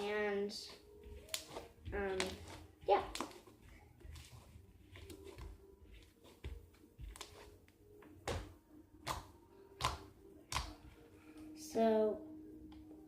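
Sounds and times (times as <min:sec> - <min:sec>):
slime squishing with sticky clicks: 0:08.2 - 0:11.0.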